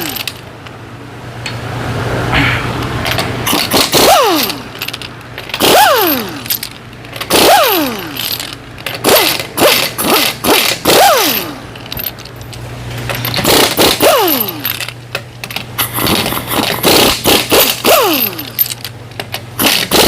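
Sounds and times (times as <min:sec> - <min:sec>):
impact wrench hammering: 0:19.6 - 0:20.0.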